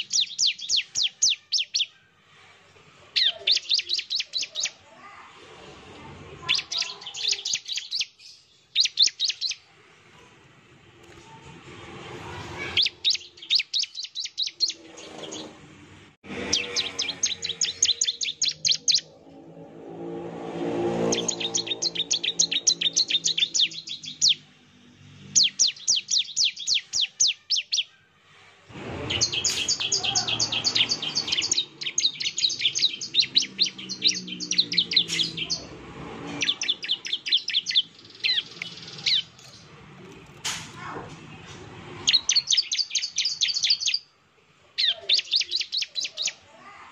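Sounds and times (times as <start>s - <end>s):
prinia singing rapid high notes: 0.0s - 2.0s, 3.2s - 4.8s, 6.4s - 9.6s, 16.4s - 19.2s, 20.9s - 24.5s, 29.0s - 35.8s, 36.4s - 39.7s.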